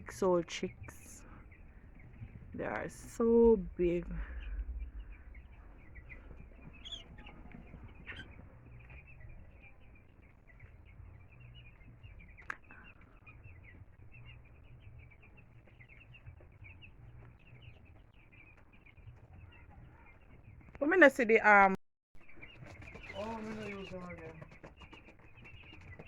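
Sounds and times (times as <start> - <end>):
chicks peeping: 0.0 - 20.9, 22.2 - 26.0.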